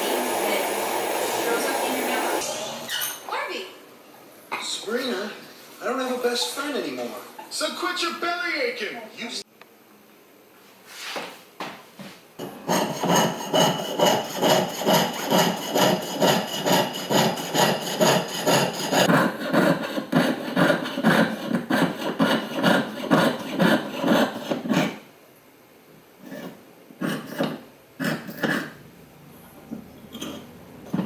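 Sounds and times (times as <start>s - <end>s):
saw cutting metal: 0.0s - 3.0s, 12.4s - 25.0s.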